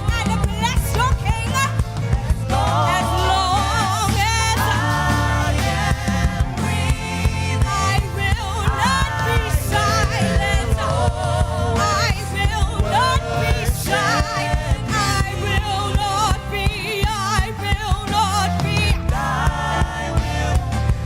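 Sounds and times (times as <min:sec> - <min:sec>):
bass and drums: 0:00.0 - 0:21.0
gospel singing: 0:00.0 - 0:21.0.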